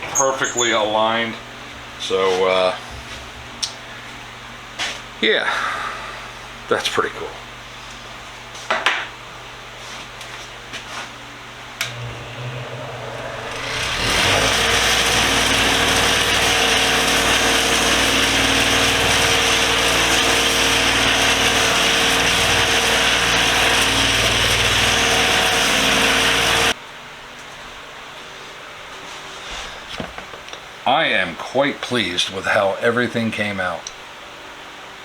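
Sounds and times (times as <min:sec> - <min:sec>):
bench grinder wire wheel running: 0:11.8 - 0:26.8.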